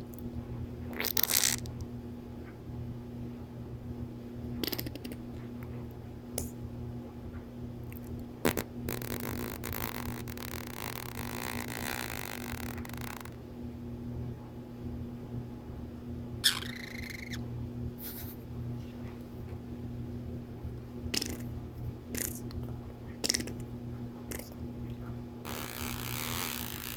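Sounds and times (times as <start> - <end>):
parrotlet raspy buzzing: 8.4 - 13.4, 16.4 - 17.4, 21.2 - 21.5, 22.1 - 22.4, 25.5 - 26.9.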